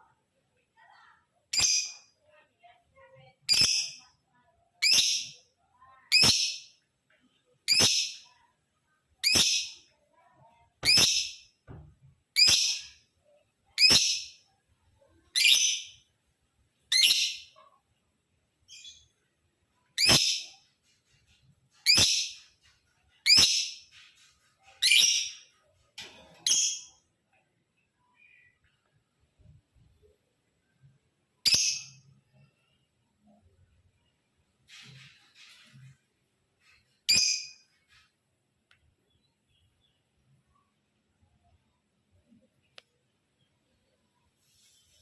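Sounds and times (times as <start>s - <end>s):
lovebird high-pitched calls: 3.5s - 4.0s, 4.8s - 5.4s, 6.1s - 6.7s, 7.7s - 8.3s, 9.2s - 9.8s, 10.8s - 11.5s, 12.4s - 13.0s, 13.8s - 14.4s, 15.4s - 16.0s, 16.9s - 17.6s, 20.0s - 20.6s, 21.8s - 22.5s, 23.2s - 24.0s, 24.8s - 25.5s, 37.1s - 37.6s.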